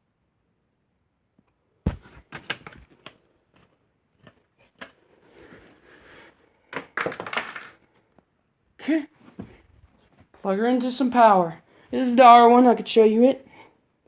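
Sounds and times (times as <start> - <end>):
knocks on plastic fan: 1.9 - 2.8
soft rustle: 1.9 - 6.6, 9.1 - 10.6.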